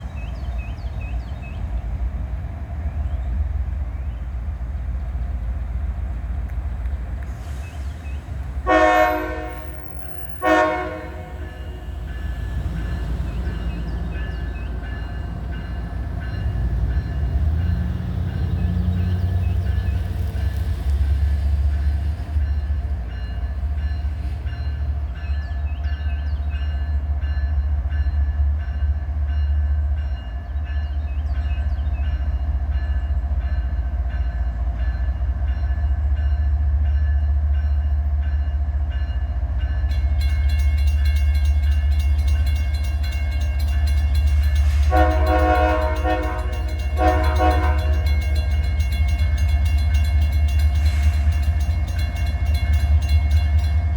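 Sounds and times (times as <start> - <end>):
diesel locomotive engine rumble: 0.0 - 53.9
rhythmic rail noise: 0.0 - 53.9
locomotive air horn blasts: 8.6 - 12.0, 44.7 - 48.6.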